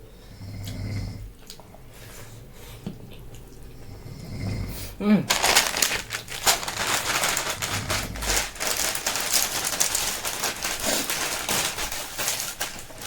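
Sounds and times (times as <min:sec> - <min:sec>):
crunchy food chewing: 0:05.3 - 0:13.0.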